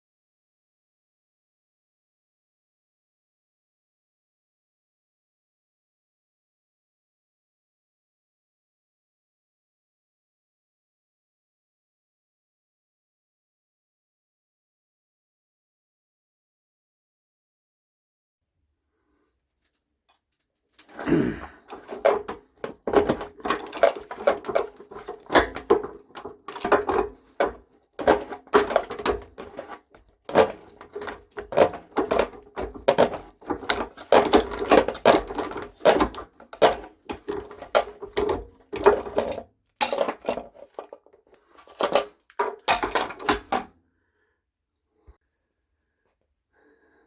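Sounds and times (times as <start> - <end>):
tools clanking on metal tank: 20.9 - 41.0, 41.6 - 43.7.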